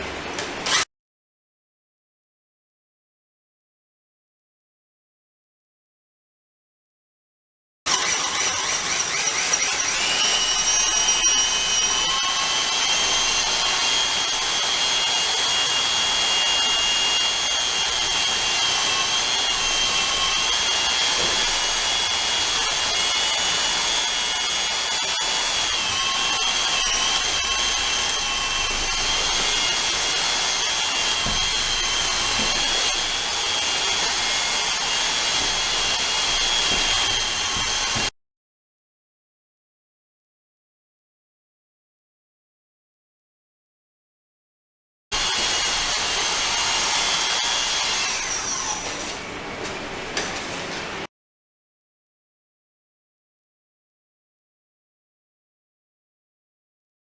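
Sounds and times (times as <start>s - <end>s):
electric mortar mixer whining: 7.9s - 38.1s.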